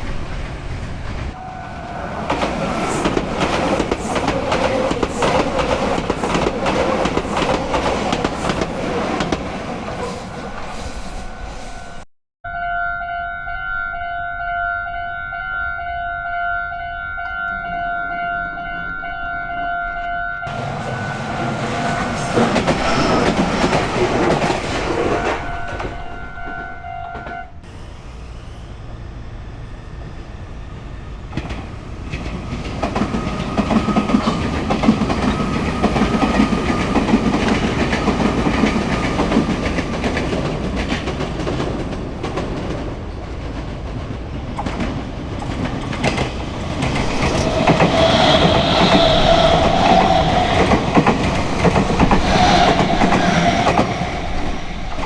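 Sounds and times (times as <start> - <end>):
train passing: 0.0 - 12.1, 13.8 - 55.0
level crossing alarm ringing: 12.5 - 24.4, 25.0 - 27.6.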